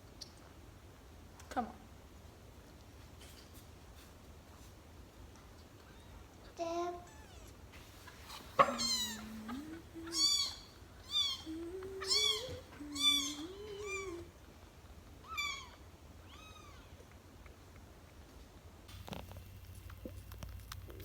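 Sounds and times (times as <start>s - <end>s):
kittens mewing: 8.4s - 14.3s, 15.2s - 17.0s.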